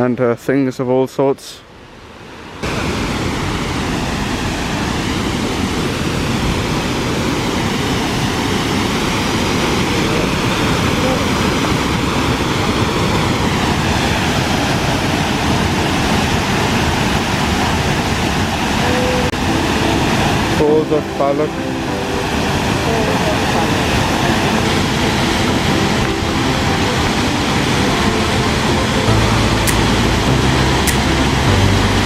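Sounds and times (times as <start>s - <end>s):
waterfall rushing over rock: 2.6s - 32.0s.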